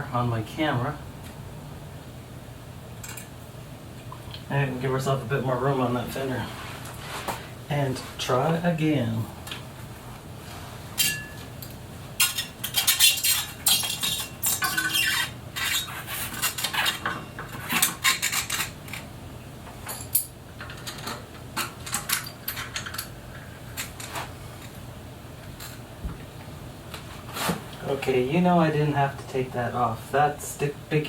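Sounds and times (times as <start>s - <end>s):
metal tools clinking and rattling: 11.0s - 15.7s, 19.8s - 24.8s.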